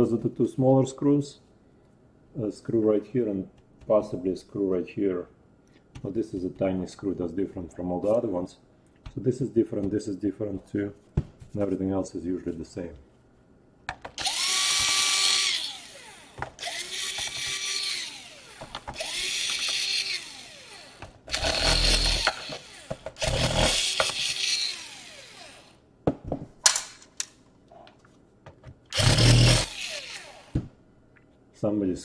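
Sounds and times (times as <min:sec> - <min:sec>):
power screwdriver motor whining: 0:14.2 - 0:25.7, 0:28.9 - 0:30.6.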